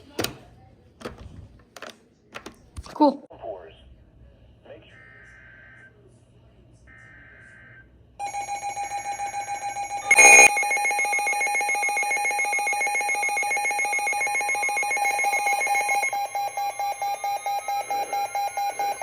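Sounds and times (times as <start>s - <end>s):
electronic alert tone pulsing: 8.2s - 19.0s.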